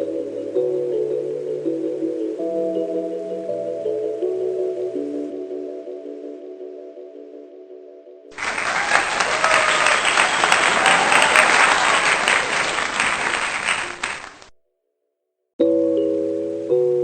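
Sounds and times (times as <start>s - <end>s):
soft music: 0.0s - 9.1s, 15.6s - 17.0s
faint voices: 8.4s - 14.4s
applause: 8.4s - 14.5s.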